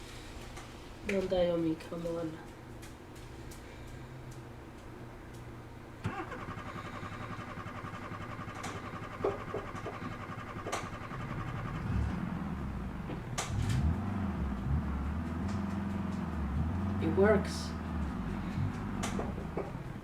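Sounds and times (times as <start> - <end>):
car starter cranking engine: 6.0 - 20.0
car engine running and revving: 6.5 - 20.0.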